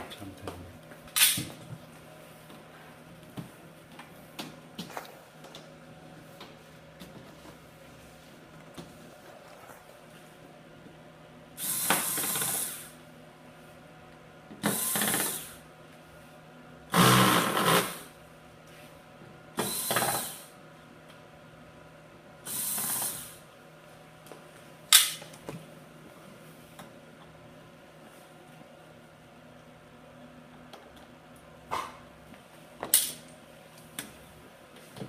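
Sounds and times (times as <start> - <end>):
power screwdriver running: 17.0 - 18.0.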